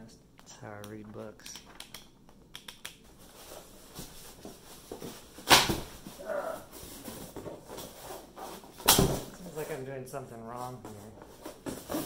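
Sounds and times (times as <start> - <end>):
cardboard and styrofoam rustling: 3.2 - 9.8, 10.5 - 12.0.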